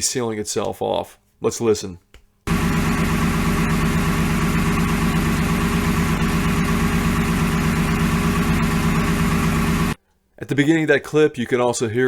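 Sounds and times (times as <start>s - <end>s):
engine idling: 2.5s - 10.0s
exhaust leak: 2.5s - 10.0s
rhythmic piston knock: 2.5s - 10.0s.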